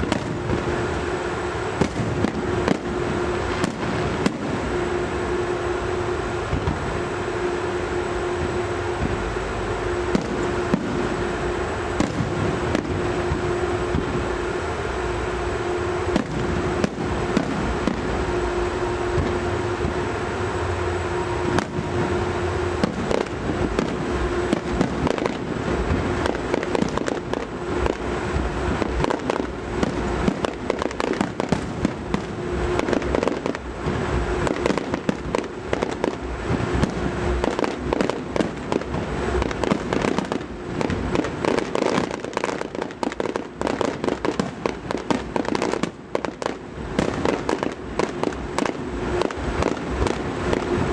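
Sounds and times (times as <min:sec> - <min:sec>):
fireworks bangs and crackling: 0:00.0 - 0:50.9.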